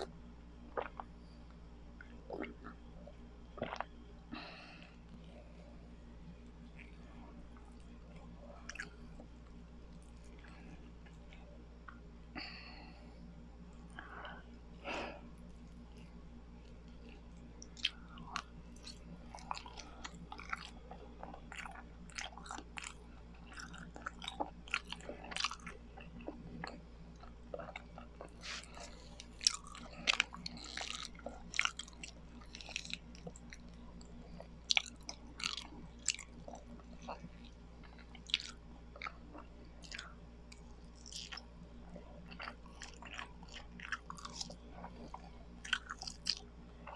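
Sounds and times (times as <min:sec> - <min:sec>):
wet sticky chewing: 0:16.0 - 0:46.9.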